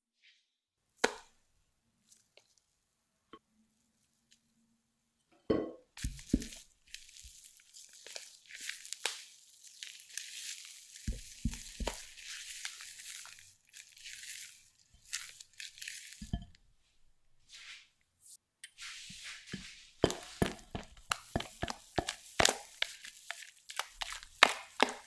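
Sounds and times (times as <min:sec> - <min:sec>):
paper crinkling and tearing: 0:06.0 - 0:16.4, 0:20.2 - 0:25.0.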